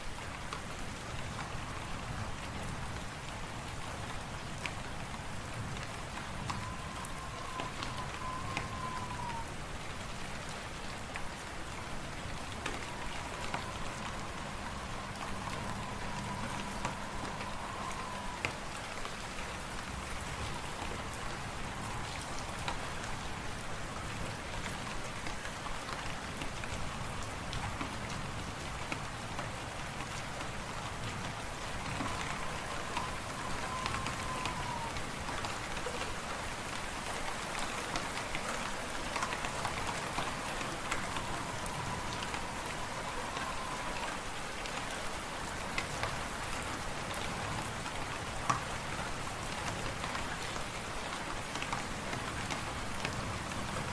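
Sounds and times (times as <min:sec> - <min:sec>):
faint wavering whistle: 0:06.1 - 0:09.6, 0:12.6 - 0:18.8, 0:31.5 - 0:36.0, 0:39.0 - 0:44.4.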